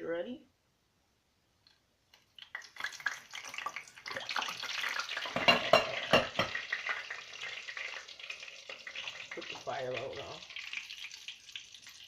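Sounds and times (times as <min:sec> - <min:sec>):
oil crackling and popping: 0:01.6 - 0:12.0
fish sizzling in hot oil: 0:02.4 - 0:12.0.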